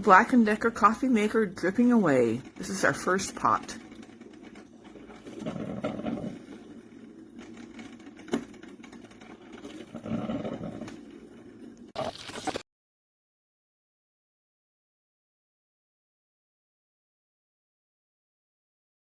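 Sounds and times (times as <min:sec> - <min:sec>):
coffee maker gurgling: 0:00.1 - 0:12.6.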